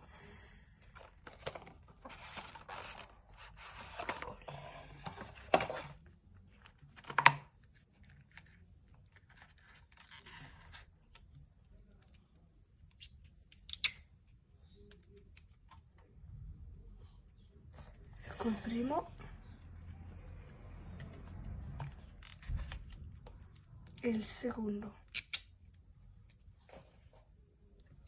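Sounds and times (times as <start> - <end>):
rustling of packaging: 0.8 - 11.4, 17.7 - 24.0
sharp clicks and snaps: 12.9 - 14.1, 25.1 - 25.5.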